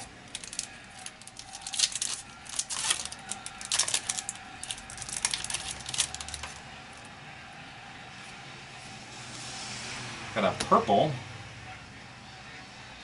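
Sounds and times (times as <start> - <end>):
cards being flipped through: 0.3 - 6.6.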